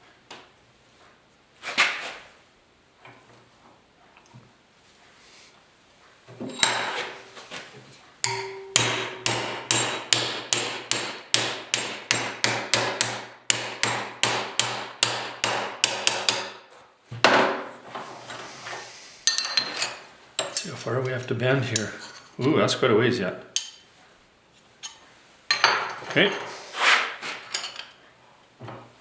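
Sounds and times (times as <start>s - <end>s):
hammer striking steel: 8.2s - 16.6s.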